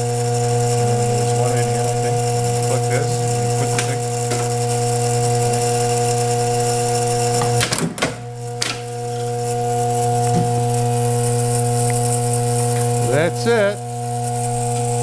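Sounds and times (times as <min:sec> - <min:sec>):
vibratory bowl feeder humming: 0:00.0 - 0:15.0
sharp knocks: 0:03.7 - 0:04.6, 0:07.4 - 0:08.9.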